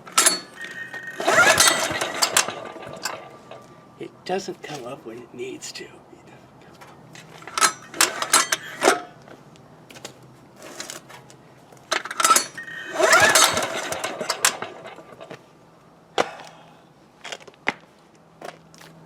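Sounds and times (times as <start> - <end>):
rope pull: 0.0 - 3.7, 12.2 - 15.4
generator engine pull-start whir: 0.0 - 4.9, 7.3 - 9.2, 11.9 - 15.6.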